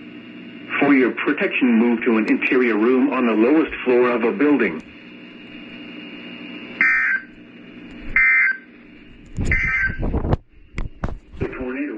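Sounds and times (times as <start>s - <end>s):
steady radio-like hiss: 0.0s - 11.9s
digital data tone bursts: 6.8s - 7.3s, 9.5s - 10.0s.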